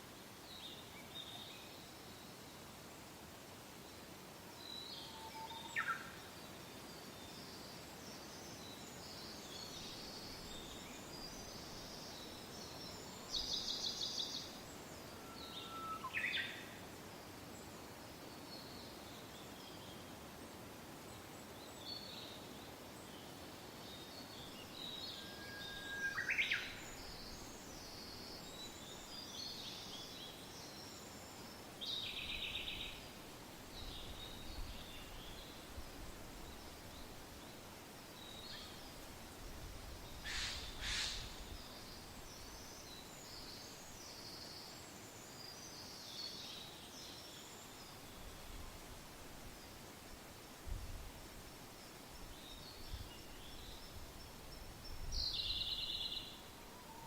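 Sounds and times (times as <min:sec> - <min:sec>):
soft steady wind: 0:00.0 - 0:57.0
sharp downward-sweeping bird calls: 0:40.3 - 0:41.3.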